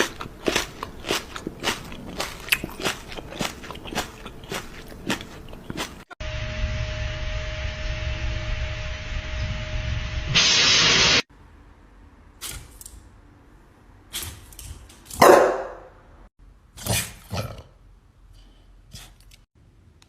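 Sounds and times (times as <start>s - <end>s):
dog barking: 15.2s - 15.9s.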